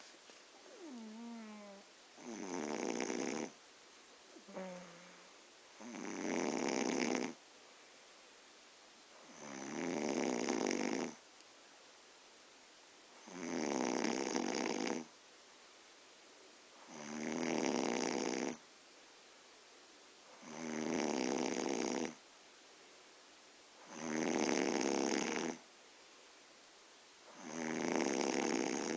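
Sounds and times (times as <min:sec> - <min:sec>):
woman snoring loudly: 0:00.7 - 0:03.5, 0:04.5 - 0:07.4, 0:09.3 - 0:11.2, 0:13.3 - 0:15.1, 0:16.9 - 0:18.6, 0:20.4 - 0:22.2, 0:23.8 - 0:25.6, 0:27.3 - 0:28.9.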